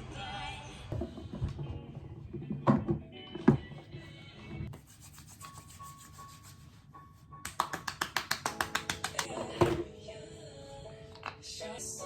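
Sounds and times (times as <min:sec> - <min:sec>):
rapid rhythmic rubbing: 0:04.7 - 0:09.3.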